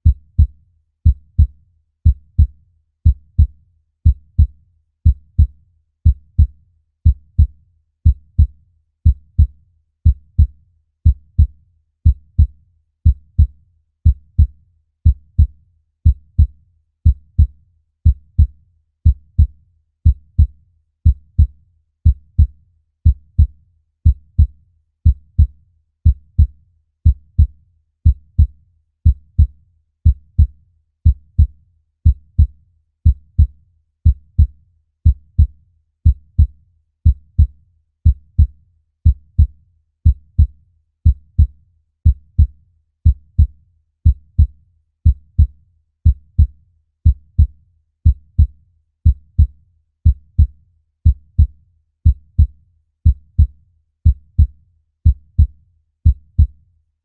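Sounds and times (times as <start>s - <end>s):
heartbeat thumping: 26.1s - 26.5s, 34.1s - 34.5s, 37.1s - 37.5s, 38.1s - 39.5s, 42.1s - 44.5s, 45.1s - 45.5s, 46.1s - 48.5s, 49.1s - 56.6s.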